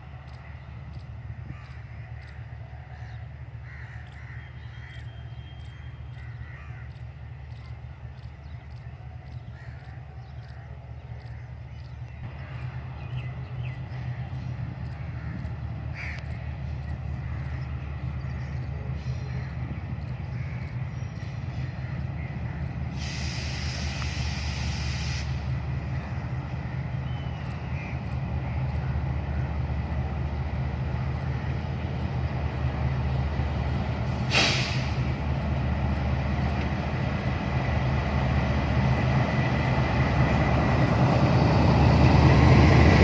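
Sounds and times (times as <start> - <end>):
steady low rumble: 0.0 - 43.0
crows cawing: 1.3 - 5.1, 6.1 - 7.1, 9.5 - 11.6, 14.0 - 16.4, 17.1 - 19.6, 20.2 - 20.9.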